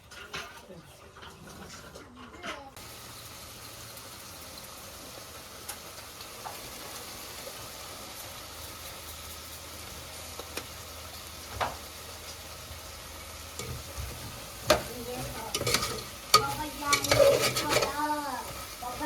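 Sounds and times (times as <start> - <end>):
utensils clinking against pot: 13.6 - 19.0.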